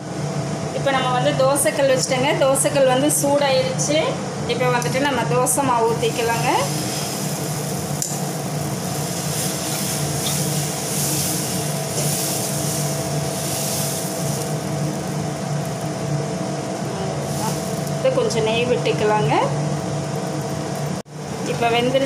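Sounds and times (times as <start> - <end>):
steady hum: 0.0 - 22.0
batter sizzling on griddle: 5.9 - 18.1.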